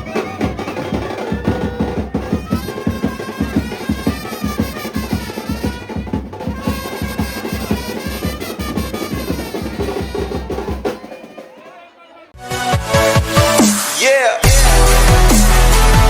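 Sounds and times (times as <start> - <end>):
brass band playing: 0.0 - 11.6, 12.4 - 16.0
bass drum hits: 14.4 - 16.0.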